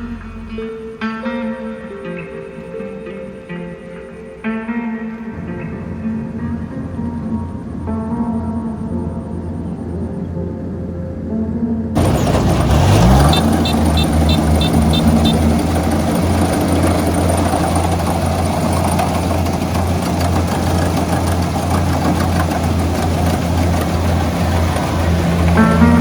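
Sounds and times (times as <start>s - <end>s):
heavy engine humming: 12.0s - 26.0s
short high beeps: 12.9s - 15.5s.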